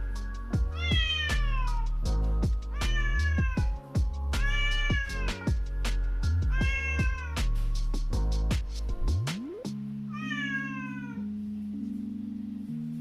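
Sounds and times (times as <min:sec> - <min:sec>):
background music with beat: 0:00.0 - 0:10.5
cat meowing: 0:00.8 - 0:01.8, 0:02.8 - 0:03.7, 0:06.5 - 0:07.4, 0:10.1 - 0:11.2.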